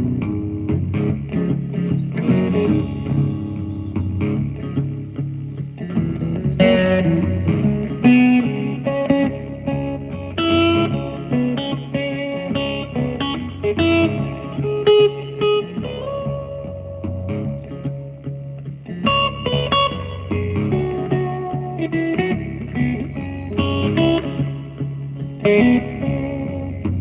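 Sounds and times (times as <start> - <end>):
guitar picked notes: 0.0 - 27.0
low bass notes: 16.1 - 27.0.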